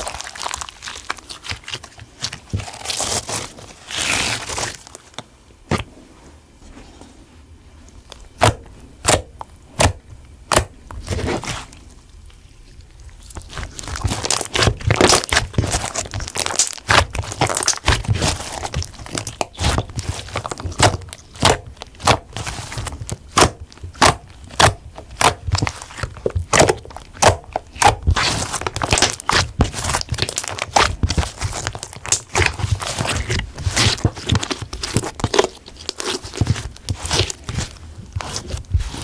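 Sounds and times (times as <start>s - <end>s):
sticky pops and crackles: 13.3s - 39.0s.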